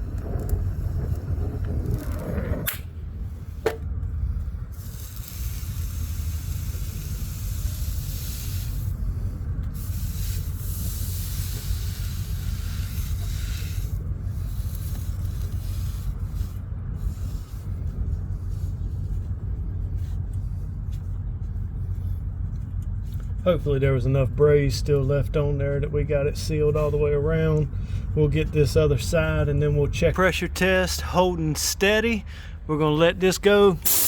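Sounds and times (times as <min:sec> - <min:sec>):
low rumble: 0:00.0 - 0:34.0
brazing torch hissing: 0:04.7 - 0:17.8, 0:33.8 - 0:34.0.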